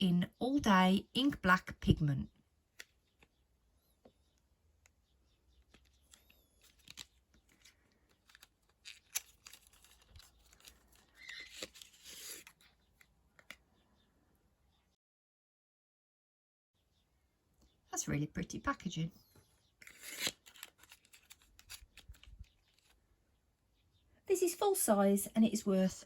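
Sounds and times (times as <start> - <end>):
packaging clicks and rustles: 5.6 - 13.6, 19.9 - 23.0
packaging crinkling tear: 6.1 - 12.7, 19.8 - 23.0.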